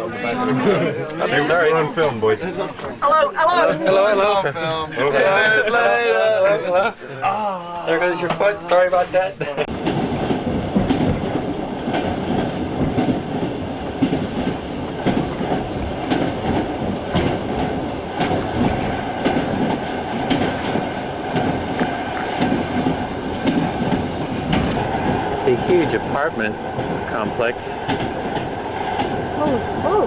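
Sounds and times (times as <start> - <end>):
train rumble and rattle: 8.0 - 30.0
wheel clicks and knocks: 22.4 - 25.6.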